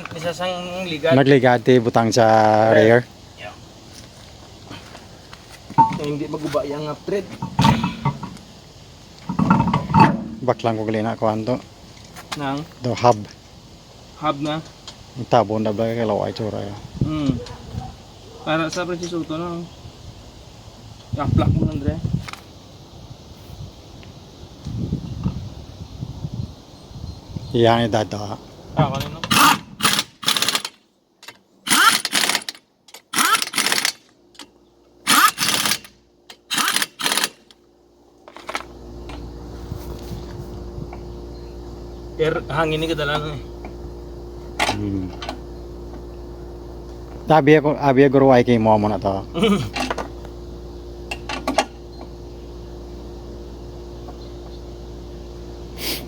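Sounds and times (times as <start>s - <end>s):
steady hum: 0.0s - 56.0s
impact wrench rattling: 5.8s - 6.1s, 7.4s - 8.4s, 9.3s - 10.4s, 29.2s - 30.8s, 31.7s - 34.5s, 35.1s - 37.4s
brief hiss: 55.8s - 56.0s.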